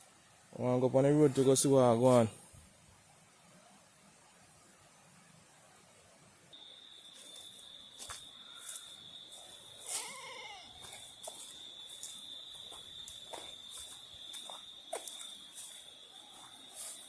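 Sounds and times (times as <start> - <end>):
goat bleating: 9.9 - 10.8.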